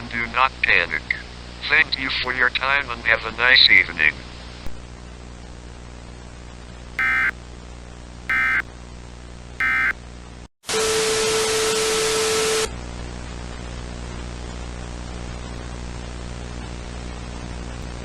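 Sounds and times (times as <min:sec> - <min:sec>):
digital data tone bursts: 0:07.0 - 0:07.3, 0:08.3 - 0:08.6, 0:09.6 - 0:09.9
loud static with steady tone: 0:07.0 - 0:07.3, 0:08.3 - 0:08.6, 0:09.6 - 0:09.9.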